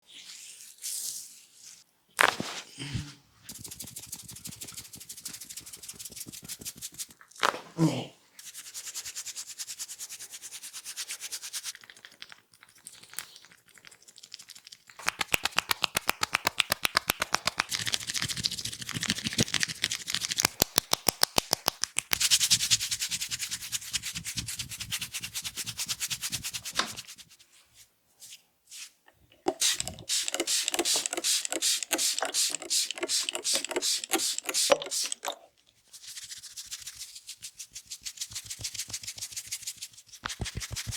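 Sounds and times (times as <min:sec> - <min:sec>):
fast even taps: 0:03.5 - 0:07.1, 0:15.0 - 0:22.6, 0:29.5 - 0:35.2, 0:38.3 - 0:39.3, 0:40.2 - 0:40.9
fingers scratching through hair: 0:03.5 - 0:07.2, 0:14.9 - 0:27.4, 0:29.6 - 0:35.3, 0:35.9 - 0:40.9.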